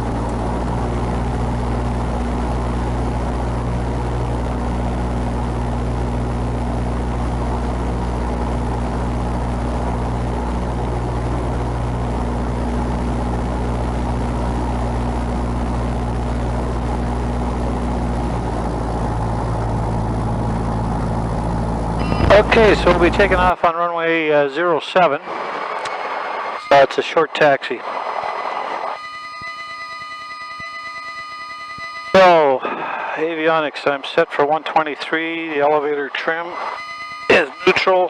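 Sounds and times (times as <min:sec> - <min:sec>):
propeller plane engine running: 0:00.0 - 0:23.6.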